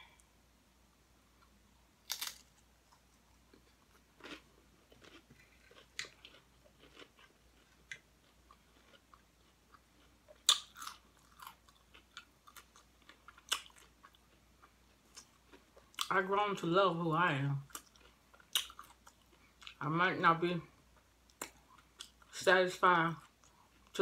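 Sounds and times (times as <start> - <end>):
soft wet chewing: 1.3 - 16.2, 17.6 - 19.8, 20.8 - 22.4, 23.1 - 24.0
tortilla chips crunching: 2.0 - 16.1.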